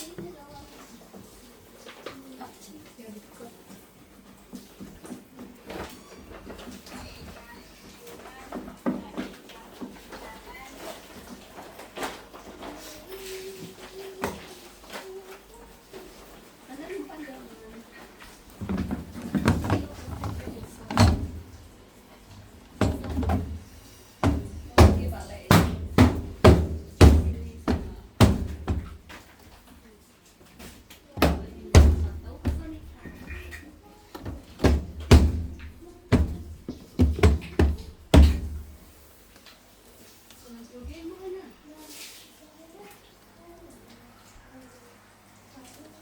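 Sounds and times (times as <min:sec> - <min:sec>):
hard parts knocking and clunking: 0:18.6 - 0:21.7, 0:22.6 - 0:29.2, 0:31.2 - 0:38.8.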